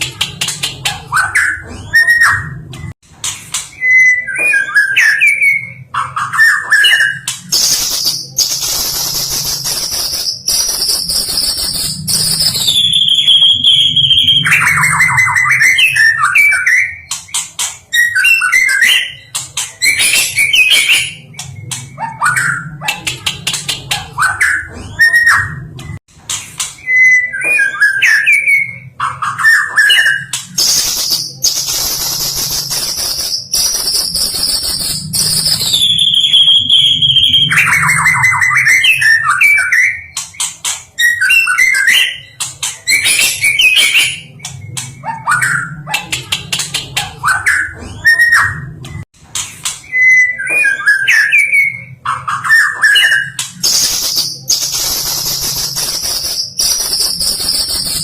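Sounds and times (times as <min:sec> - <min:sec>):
bird singing: 0:03.7 - 0:22.8, 0:26.8 - 0:48.6.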